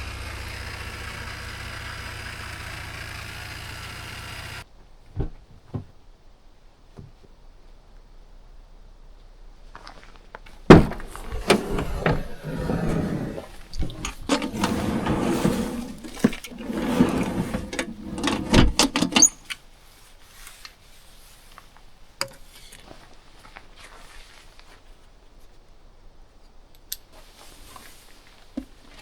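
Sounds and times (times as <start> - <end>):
camping gear rustling and clattering: 9.7 - 25.6, 27.1 - 29.0.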